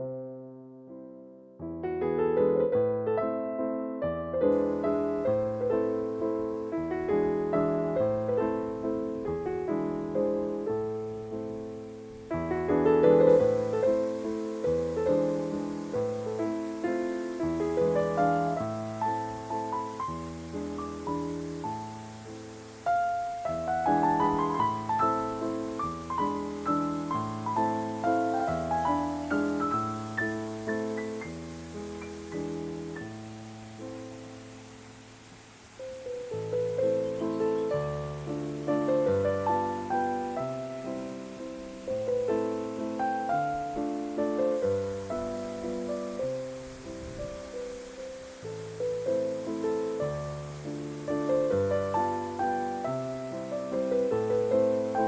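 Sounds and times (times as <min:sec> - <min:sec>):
gentle piano music: 0:00.0 - 0:55.0.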